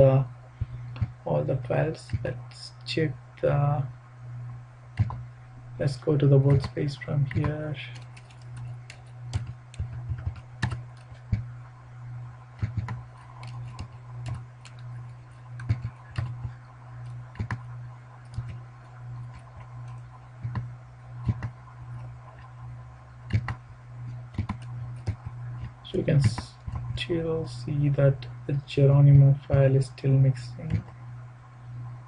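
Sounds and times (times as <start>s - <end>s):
low electrical hum: 0.0s - 32.0s
computer keyboard clicks: 6.5s - 11.4s, 12.6s - 14.8s, 15.6s - 16.5s, 17.3s - 17.6s, 18.2s - 18.6s, 19.3s - 21.5s, 23.3s - 23.6s, 24.3s - 26.8s.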